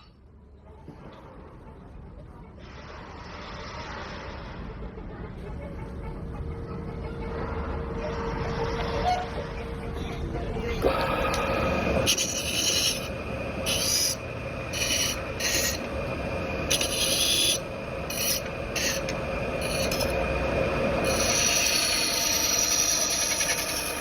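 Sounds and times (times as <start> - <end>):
sanding wood by hand: 12.0 - 20.3.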